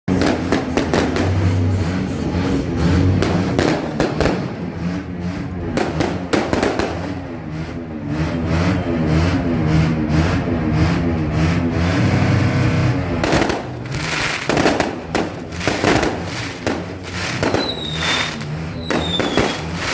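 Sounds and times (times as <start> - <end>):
fireworks bangs and crackles: 0.1 - 4.8, 5.6 - 7.3, 13.2 - 19.9.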